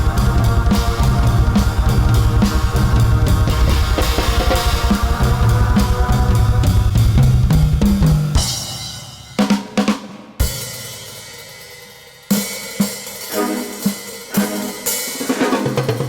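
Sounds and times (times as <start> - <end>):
drum kit playing fast: 0.0 - 16.0.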